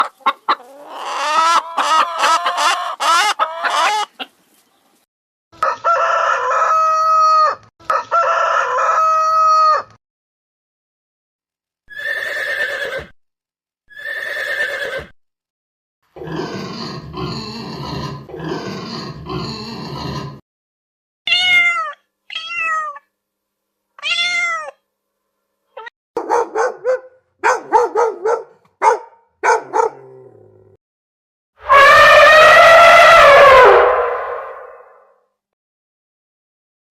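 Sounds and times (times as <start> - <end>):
animal calls: 31.6 - 35.0.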